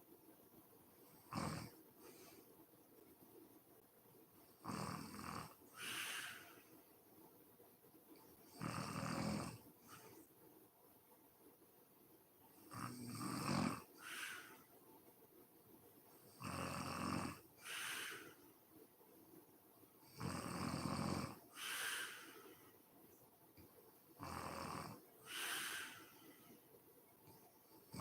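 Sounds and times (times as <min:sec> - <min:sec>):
woman snoring: 0:01.2 - 0:01.7, 0:04.6 - 0:06.6, 0:08.5 - 0:09.6, 0:12.7 - 0:14.6, 0:16.3 - 0:18.4, 0:20.1 - 0:22.4, 0:24.2 - 0:26.2.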